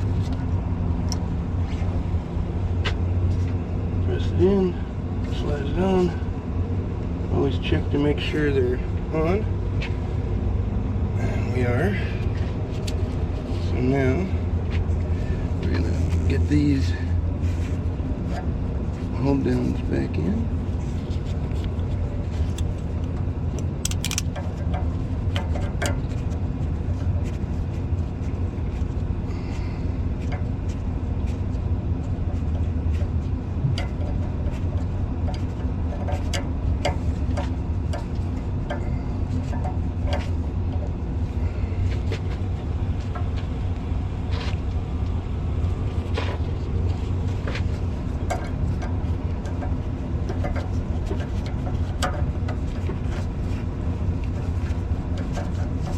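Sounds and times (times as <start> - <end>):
low rumble: 8.4 - 25.3
clicks and knocks of clamps: 23.8 - 24.4.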